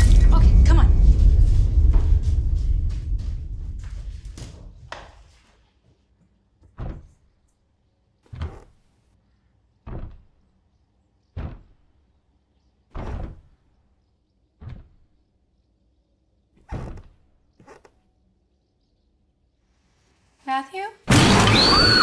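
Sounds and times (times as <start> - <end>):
heavy thuds: 0.0 - 5.5, 9.8 - 10.4, 11.3 - 12.0, 12.9 - 13.8.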